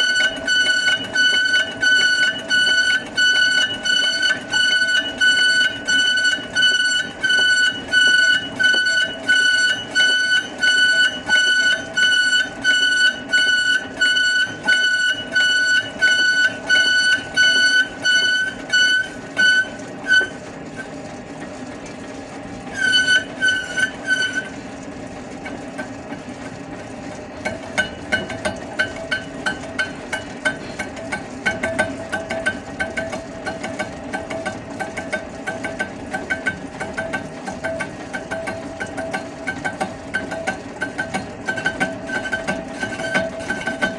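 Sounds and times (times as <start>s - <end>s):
high pulsing squeal: 0.0s - 20.4s
lathe humming: 0.0s - 21.1s.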